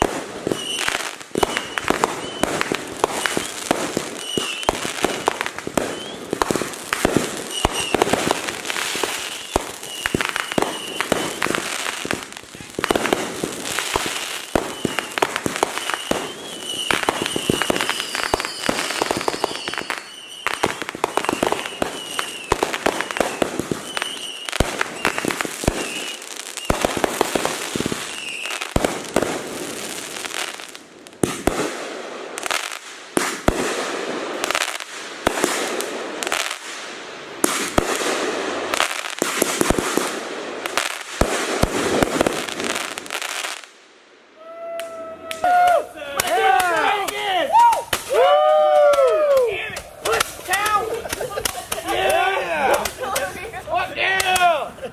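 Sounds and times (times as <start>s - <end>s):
firework whistles: 0.0s - 28.8s
firework bangs and crackling: 0.0s - 54.9s.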